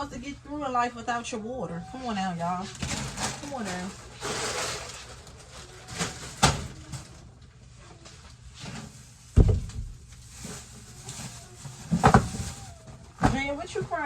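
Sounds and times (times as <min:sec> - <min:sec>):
groceries rustling: 0:00.0 - 0:14.0
heavy thump: 0:09.3 - 0:10.1.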